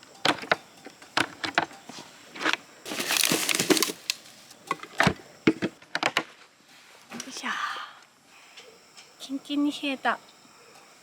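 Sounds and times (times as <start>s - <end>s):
rustling: 2.9s - 4.6s.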